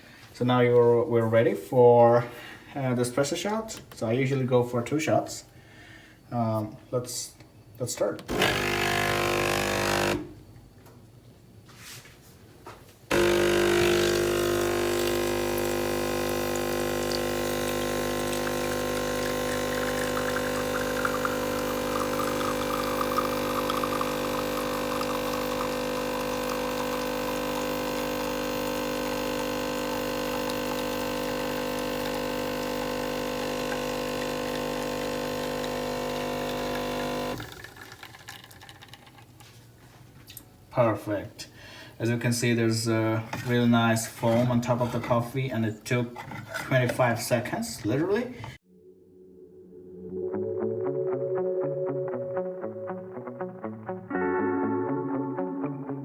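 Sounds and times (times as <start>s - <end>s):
espresso machine pump humming: 8.3s - 10.3s, 13.1s - 38.8s.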